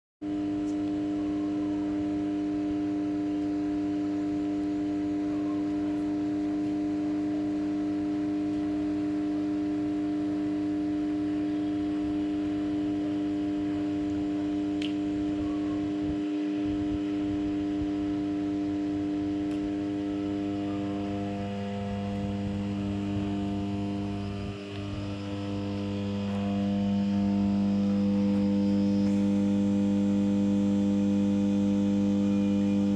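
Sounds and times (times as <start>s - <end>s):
transformer humming: 10.8s - 32.9s.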